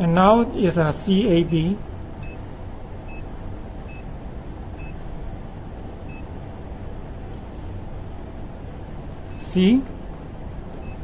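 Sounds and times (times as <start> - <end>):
low hum: 0.0 - 11.0
faint electronic beeps: 7.3 - 7.8, 10.8 - 11.0.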